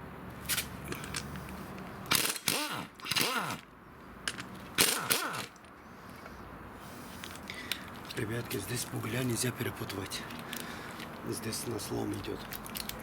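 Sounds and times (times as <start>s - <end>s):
handheld power tool bursts: 2.1s - 3.6s, 4.8s - 5.5s.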